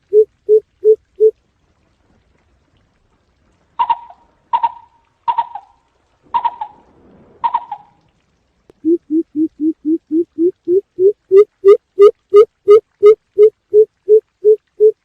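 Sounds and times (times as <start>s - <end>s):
deep bird hoots: 3.8s - 8.0s, 8.8s - 15.0s.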